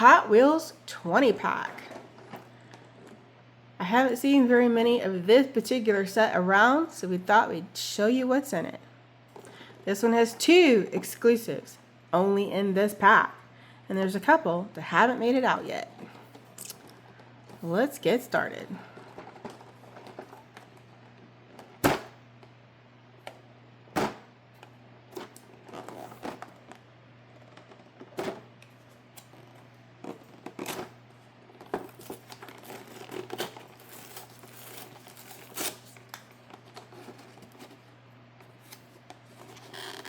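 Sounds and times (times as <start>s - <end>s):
cardboard and plastic rustling: 16.0s - 22.6s, 23.2s - 40.0s.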